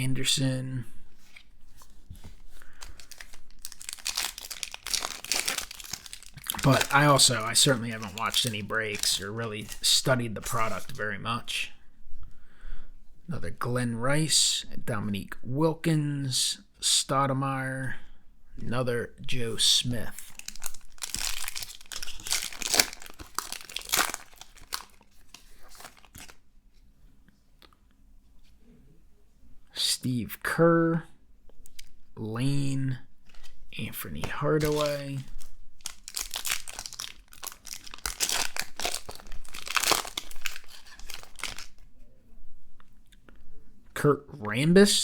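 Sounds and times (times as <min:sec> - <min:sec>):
wrapper crinkling and tearing: 0:01.2 - 0:11.0, 0:20.0 - 0:26.4, 0:34.4 - 0:41.9.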